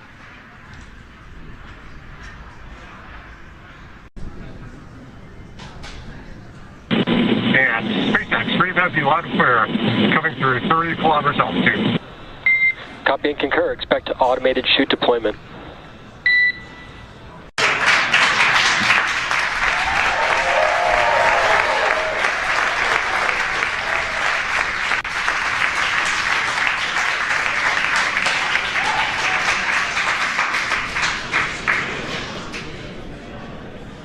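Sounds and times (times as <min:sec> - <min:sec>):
crowd applauding and cheering: 0:17.6 - 0:32.6
people shouting: 0:19.7 - 0:22.2, 0:28.4 - 0:29.5.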